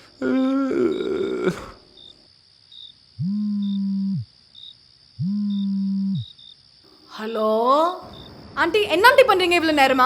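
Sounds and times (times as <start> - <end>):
faint crickets chirping: 0.0 - 10.0
mobile phone vibrating: 3.2 - 4.3, 5.2 - 6.3.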